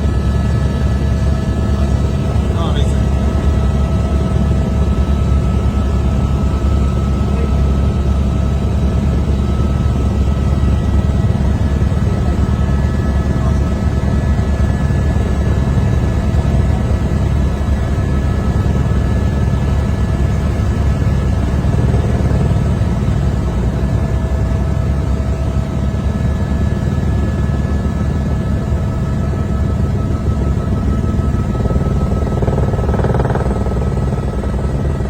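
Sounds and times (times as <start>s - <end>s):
faint steady whine: 0.0s - 35.0s
helicopter rotor drone: 0.0s - 35.0s.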